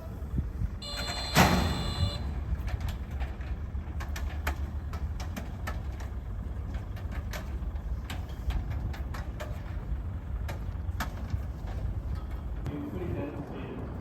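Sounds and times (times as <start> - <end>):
bell ringing: 0.8 - 2.2
gate doors clanging open: 0.8 - 4.6.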